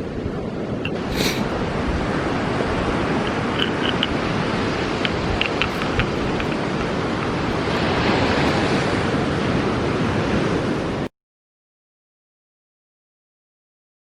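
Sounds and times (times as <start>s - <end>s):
waves washing onto beach: 0.0s - 11.1s
faint clicks: 3.2s - 4.2s, 5.0s - 7.6s.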